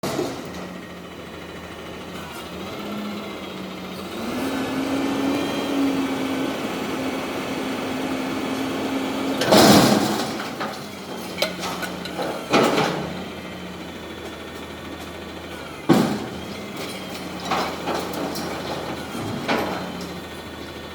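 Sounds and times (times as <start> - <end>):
dumpster slamming metal crash: 0.0 - 0.8, 8.1 - 13.7, 15.4 - 20.6
garbage truck engine running: 0.0 - 20.9.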